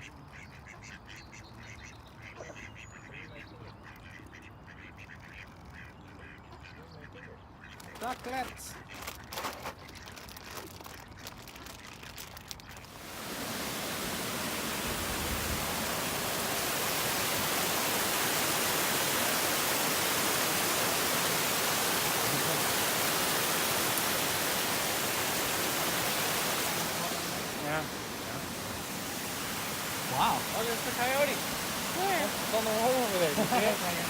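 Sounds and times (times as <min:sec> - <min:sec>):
steady rushing noise: 0:13.0 - 0:22.5.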